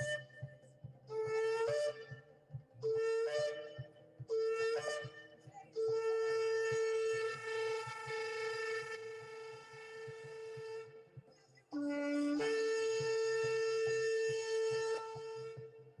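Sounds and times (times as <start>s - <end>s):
ram's horn blasts: 0.0s - 16.0s.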